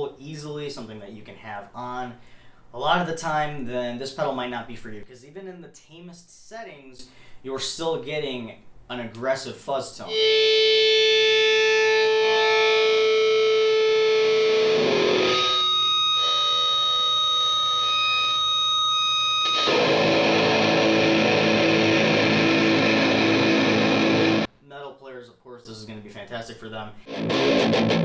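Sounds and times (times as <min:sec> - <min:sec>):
fuzz electric guitar: 0:10.1 - 0:24.5, 0:27.1 - 0:28.0.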